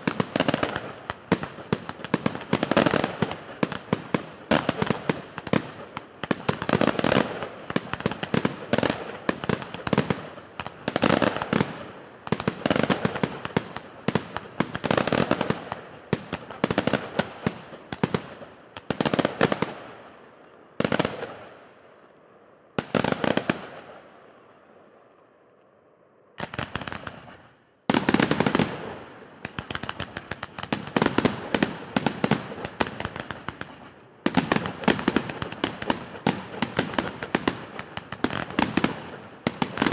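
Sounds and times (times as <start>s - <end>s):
crackling firecrackers: 0.0s - 22.0s, 22.6s - 25.2s, 26.4s - 39.9s
fireworks bangs: 22.8s - 24.2s, 26.4s - 39.9s.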